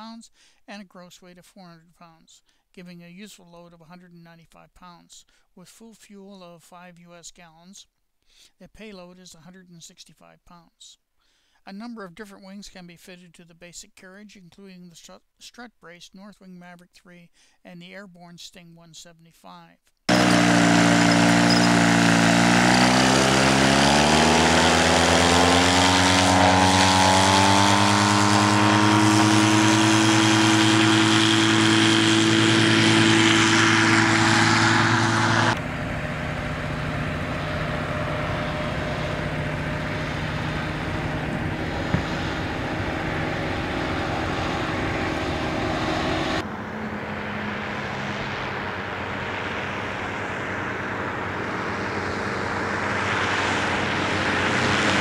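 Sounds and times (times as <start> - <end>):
ultralight engine and propeller: 20.1 - 55.0.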